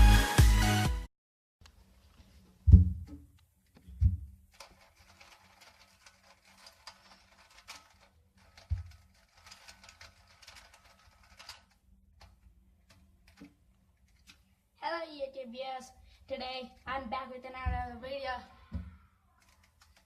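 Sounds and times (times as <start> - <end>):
low thump: 2.7 - 3.2
plastic clicking and rattling: 3.0 - 14.5, 19.4 - 20.0.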